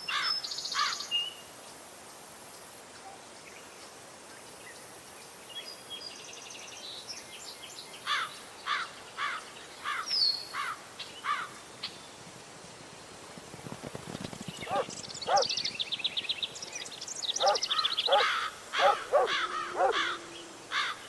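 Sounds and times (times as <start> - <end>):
birds calling: 14.0 - 21.0
fast bird trill: 14.4 - 15.8, 17.4 - 20.0.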